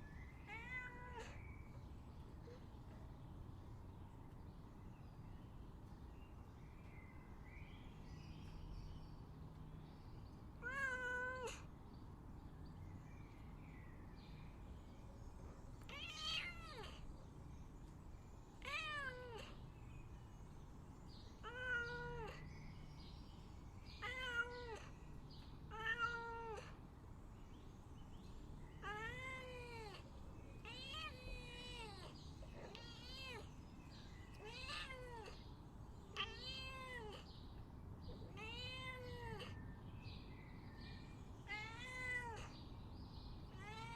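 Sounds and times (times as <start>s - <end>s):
cat meowing: 0.5s - 1.4s, 10.6s - 11.7s, 15.8s - 17.1s, 18.6s - 19.6s, 21.4s - 22.4s, 24.0s - 24.9s, 25.7s - 26.8s, 28.8s - 33.5s, 34.3s - 35.5s, 36.1s - 37.3s, 38.3s - 39.6s, 41.4s - 42.5s, 43.5s - 43.9s.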